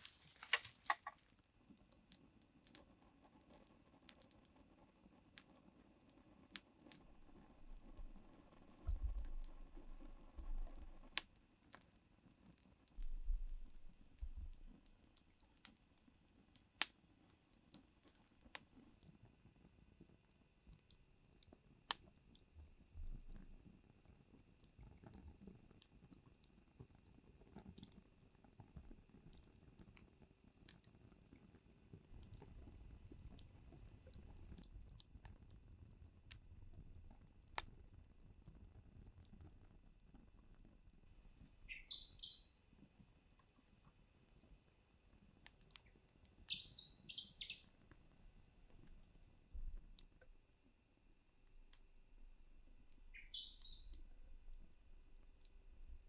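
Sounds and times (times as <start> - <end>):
wood fire crackling: 0.0 - 50.4, 51.4 - 56.0
loud fire snaps: 5.4 - 11.9, 16.6 - 18.7.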